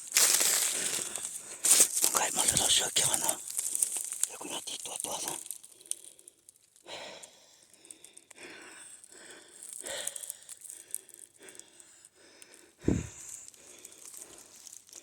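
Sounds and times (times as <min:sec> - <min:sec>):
person breathing: 0:00.6 - 0:01.8, 0:05.6 - 0:14.7.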